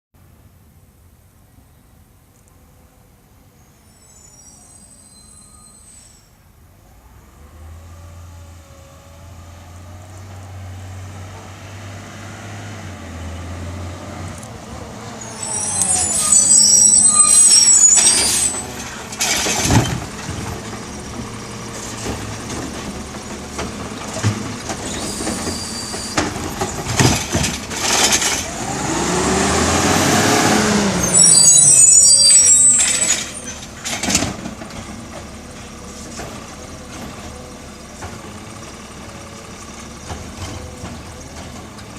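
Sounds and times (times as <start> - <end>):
truck brakes squealing: 3.6 - 6.5, 14.9 - 22.4, 24.7 - 34.4
air brakes hissing: 3.8 - 6.4, 15.1 - 20.0, 24.8 - 26.7, 31.0 - 34.0
truck engine and lift: 6.8 - 41.9
sharp knocks of cart: 17.9 - 28.8, 33.1 - 41.9.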